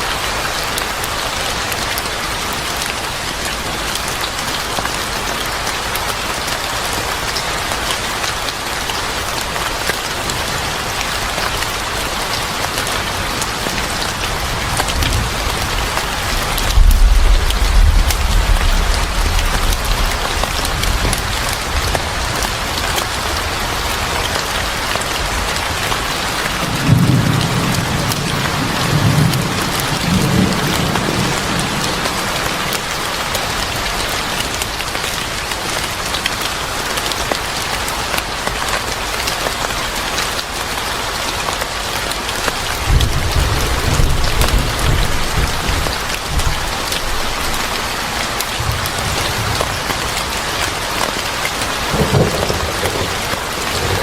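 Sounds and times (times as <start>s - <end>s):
heavy rain: 0.0s - 54.0s
thunder rumbles: 13.2s - 22.9s, 42.7s - 47.8s, 48.5s - 54.0s.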